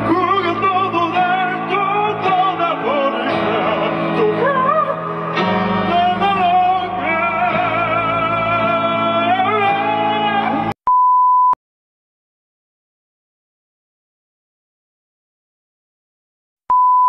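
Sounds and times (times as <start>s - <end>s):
singing with vibrato: 0.0s - 10.8s.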